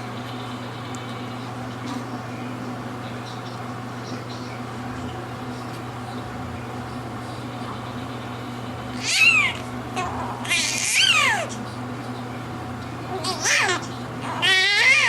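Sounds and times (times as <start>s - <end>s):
newborn baby crying: 9.0s - 11.6s, 13.1s - 15.0s.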